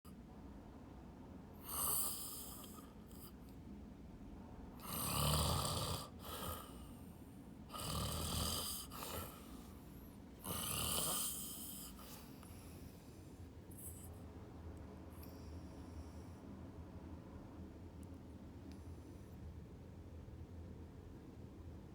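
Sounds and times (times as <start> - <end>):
person snoring: 1.6 - 2.9, 4.8 - 6.9, 7.7 - 9.6, 10.4 - 12.2.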